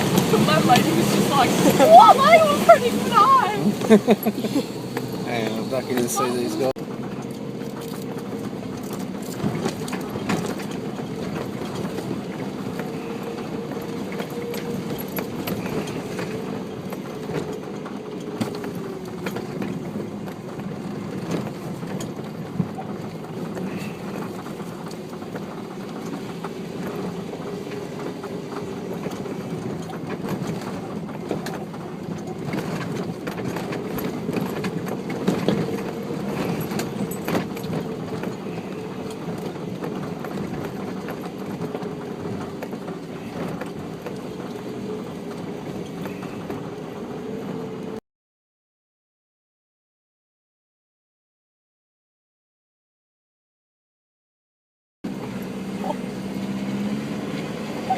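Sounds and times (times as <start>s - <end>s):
engine running at low revs: 0.0s - 48.0s, 55.1s - 57.9s
knocks and rattles: 6.8s - 46.7s.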